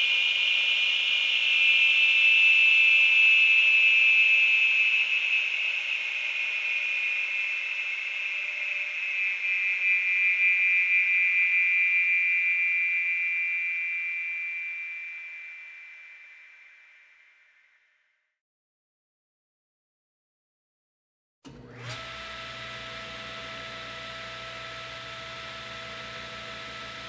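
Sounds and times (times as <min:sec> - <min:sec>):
electric saw whining: 0:00.0 - 0:12.6, 0:21.5 - 0:27.0.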